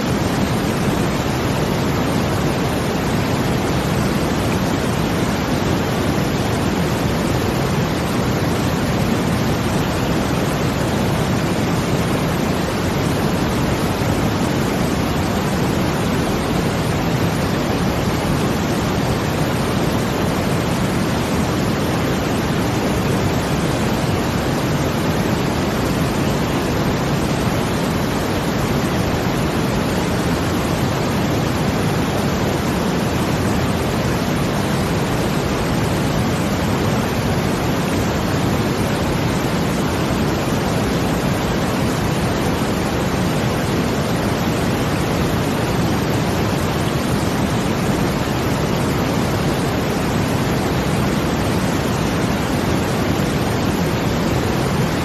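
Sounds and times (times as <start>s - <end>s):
brown noise: 0.0s - 55.0s
rushing water: 0.0s - 55.0s.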